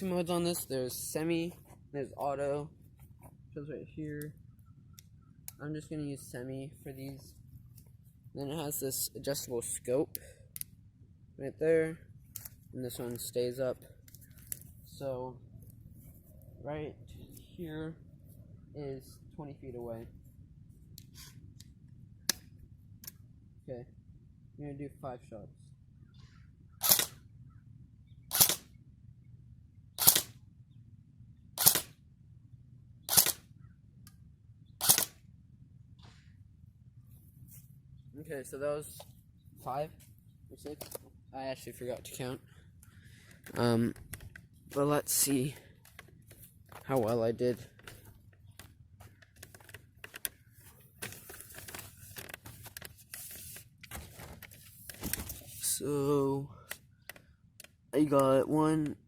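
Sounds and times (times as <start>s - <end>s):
airsoft rifle shots: 26.8s - 27.2s, 28.3s - 28.7s, 30.0s - 30.4s, 31.6s - 32.0s, 33.1s - 33.4s, 34.8s - 35.2s
handling clicks and rustles: 42.8s - 55.8s.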